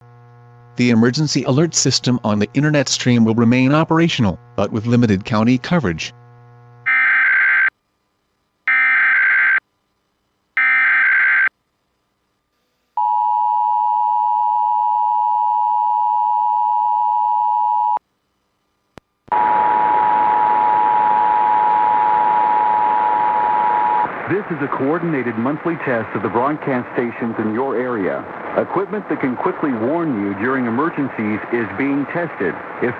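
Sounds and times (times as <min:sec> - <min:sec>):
radio static hiss: 0:00.0 - 0:08.3, 0:19.2 - 0:32.9.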